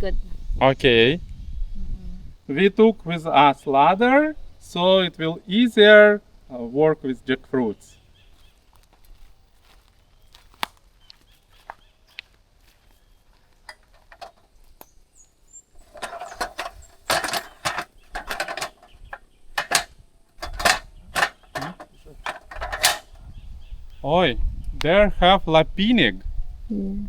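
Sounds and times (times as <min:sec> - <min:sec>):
dry vegetation crackling rustles: 0:08.0 - 0:23.2.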